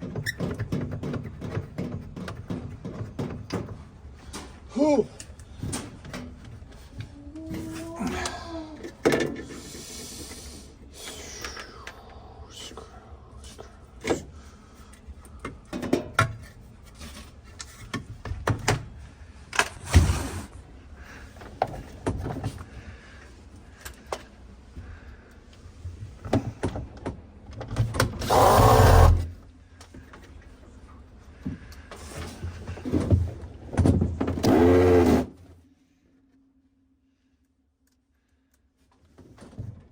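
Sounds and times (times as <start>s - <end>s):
power tool driving a screw: 28.2s - 29.3s, 34.4s - 35.3s.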